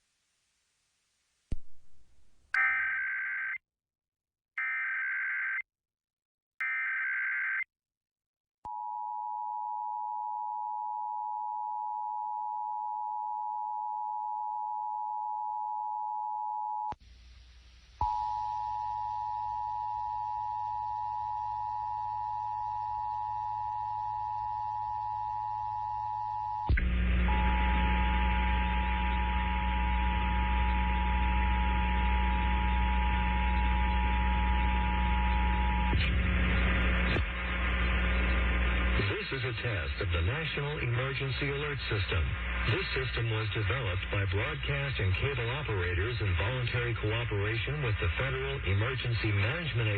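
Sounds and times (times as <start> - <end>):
loud hum: 26.7 - 46.4
radio static: 26.8 - 49.9.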